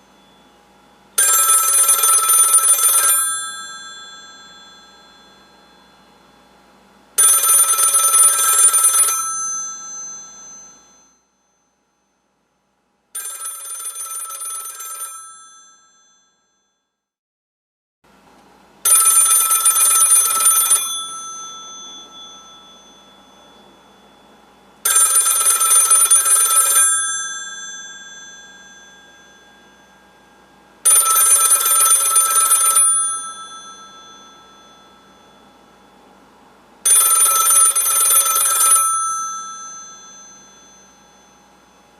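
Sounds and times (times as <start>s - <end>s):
telephone bell ringing: 0.0s - 11.7s, 13.2s - 16.9s, 18.8s - 41.9s.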